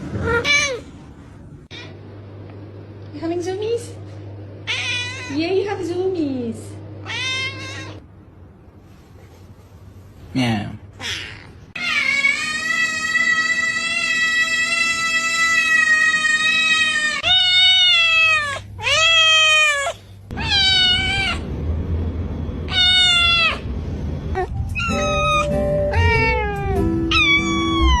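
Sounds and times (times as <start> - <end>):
cat meowing: 4.6 - 5.4, 7.0 - 8.0, 11.0 - 21.4, 22.7 - 23.6, 24.4 - 28.0.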